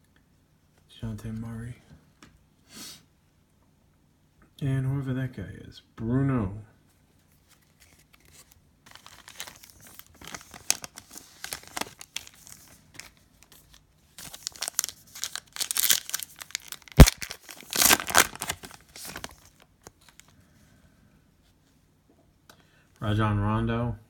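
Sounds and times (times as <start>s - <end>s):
wrapper tearing and crinkling: 7.6s - 20.3s.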